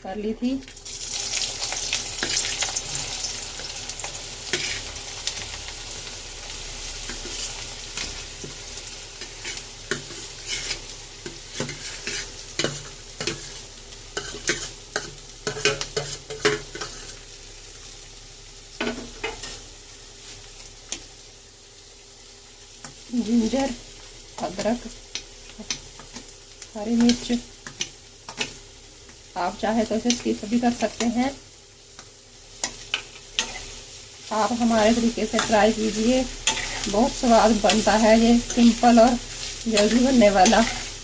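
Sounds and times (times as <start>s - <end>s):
onions sizzling in oil: 0.1s - 41.0s
spatula scraping pan: 4.5s - 5.0s, 9.2s - 17.2s, 32.6s - 33.8s, 34.4s - 41.0s.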